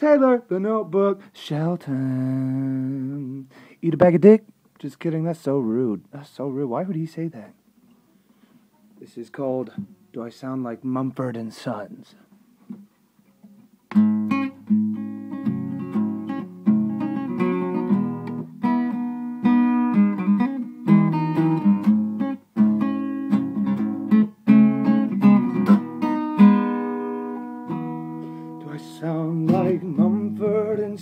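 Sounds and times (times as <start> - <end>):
acoustic guitar strumming chords: 13.9 - 31.0.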